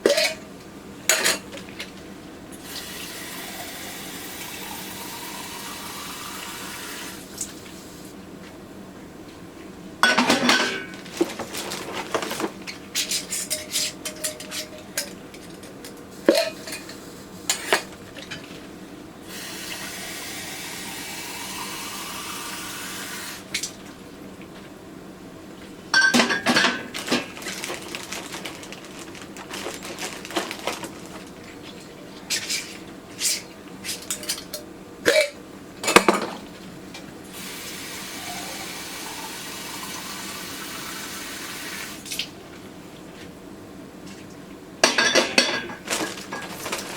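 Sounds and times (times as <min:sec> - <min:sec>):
tap water running: 0:02.6 - 0:08.0, 0:19.3 - 0:23.8, 0:37.3 - 0:42.4.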